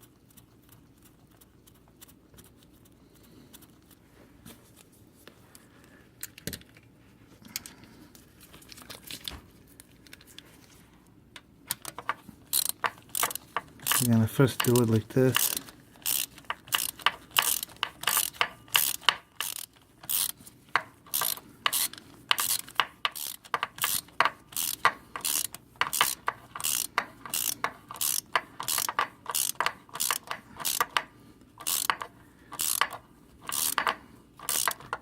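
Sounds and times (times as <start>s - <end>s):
hand ratchet clicking: 11.7s - 35.0s.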